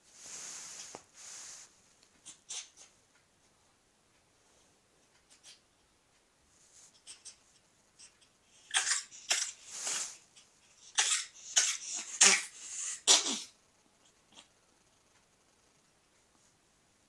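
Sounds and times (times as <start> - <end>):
ferret coughing: 10.9 - 13.6.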